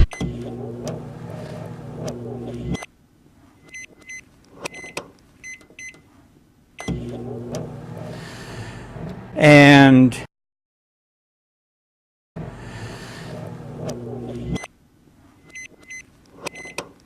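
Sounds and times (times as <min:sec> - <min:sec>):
microwave oven humming: 0:00.0 - 0:03.2, 0:06.8 - 0:10.2, 0:12.4 - 0:15.8.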